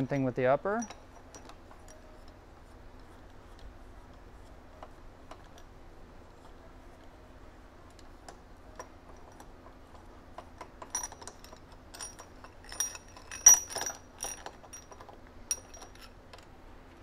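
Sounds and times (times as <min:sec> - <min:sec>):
small steel parts clinking: 0:00.0 - 0:02.4, 0:10.4 - 0:16.5
faint steady hum: 0:00.0 - 0:17.0.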